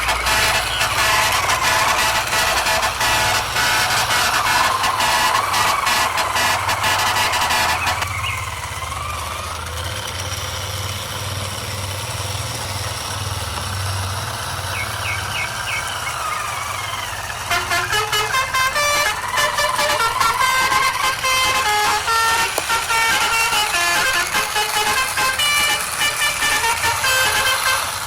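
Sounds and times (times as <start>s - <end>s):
pitched horn tones: 0.0s - 8.6s, 15.1s - 28.0s.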